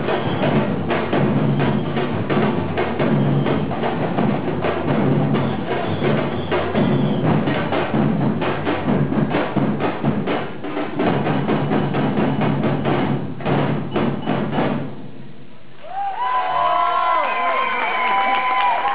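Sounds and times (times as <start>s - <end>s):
fast drumming: 0.0s - 14.9s.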